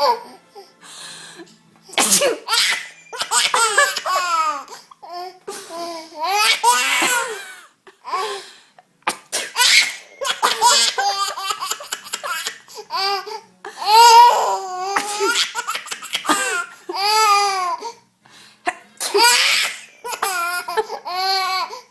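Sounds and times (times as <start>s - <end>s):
breathy bursts: 0.0s - 2.0s.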